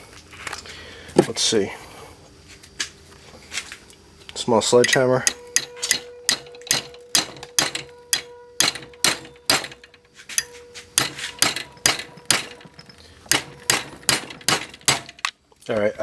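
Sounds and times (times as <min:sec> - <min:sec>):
sledgehammer striking metal: 0:04.8 - 0:15.3.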